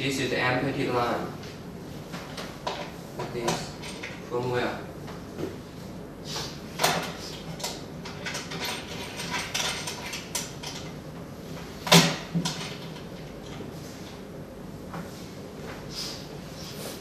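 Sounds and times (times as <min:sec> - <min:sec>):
machine parts clicking and rustling: 0:06.8 - 0:10.9.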